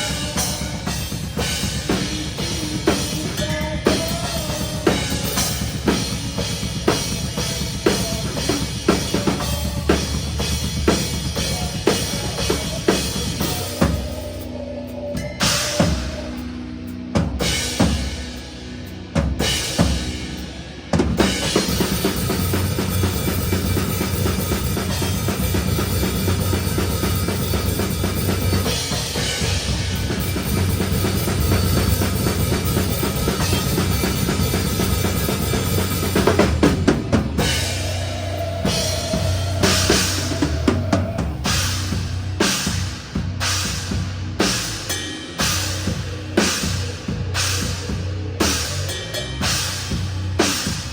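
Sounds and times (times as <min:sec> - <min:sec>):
cymbals: 0:00.0 - 0:50.9
metal band playing live: 0:00.0 - 0:50.9
bass drum: 0:21.0 - 0:50.9.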